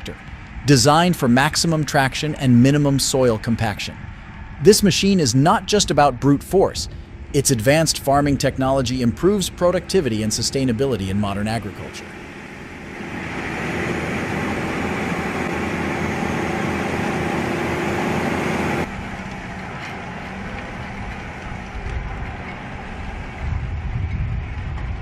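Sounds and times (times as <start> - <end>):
quieter low engine: 0.0 - 25.0
heavy machine engine running: 6.9 - 25.0.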